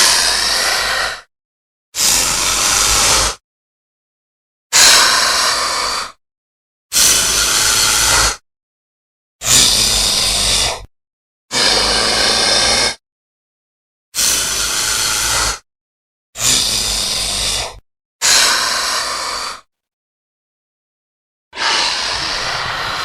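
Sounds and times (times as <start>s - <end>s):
airy rasping creature calls: 0.0s - 1.3s, 2.0s - 3.4s, 7.0s - 8.4s, 11.5s - 13.0s, 14.2s - 15.6s, 21.6s - 23.0s.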